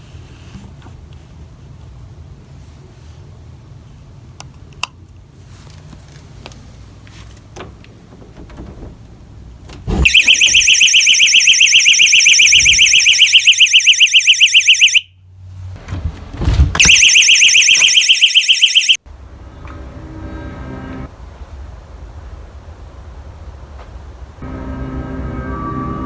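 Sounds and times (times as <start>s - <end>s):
warbling alarm siren: 10.0s - 15.2s, 16.8s - 19.0s.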